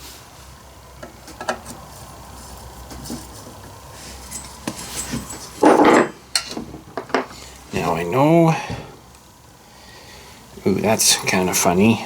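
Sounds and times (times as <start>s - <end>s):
parts clattering: 2.8s - 7.4s.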